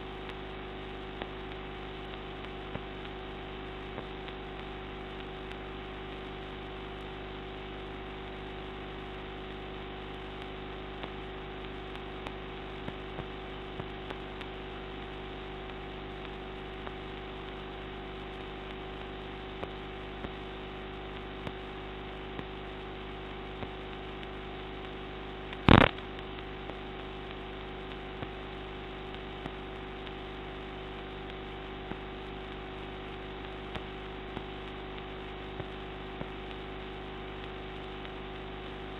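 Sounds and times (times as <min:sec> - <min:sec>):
electrical hum: 0:00.0 - 0:38.9.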